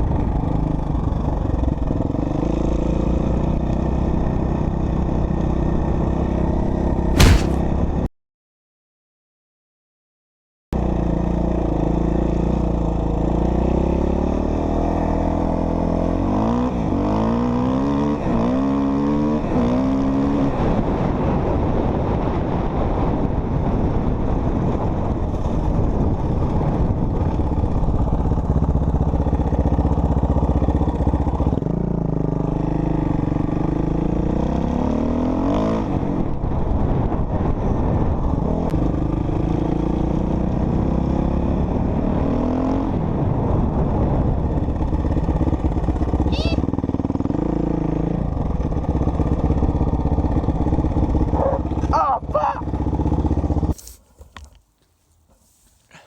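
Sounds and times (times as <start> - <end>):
dirt bike engine revving: 7.2 - 7.6.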